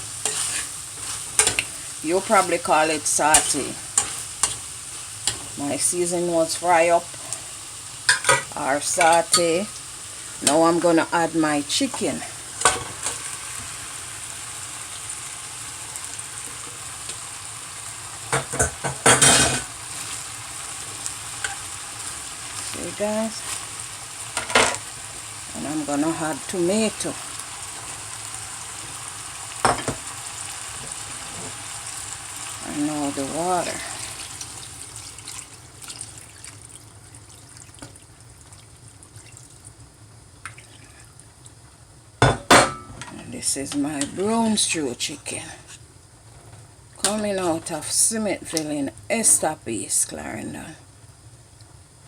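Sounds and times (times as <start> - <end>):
seasoning sizzling in oil: 0.0 - 40.6
water trickling into a pot: 32.4 - 41.8
light drips and clicks: 40.4 - 41.6.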